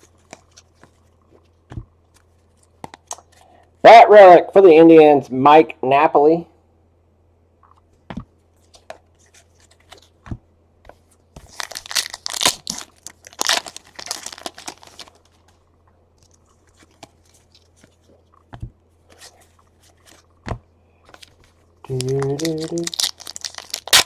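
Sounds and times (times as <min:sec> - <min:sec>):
wrapper tearing and crinkling: 0:11.4 - 0:15.4, 0:21.9 - 0:24.0.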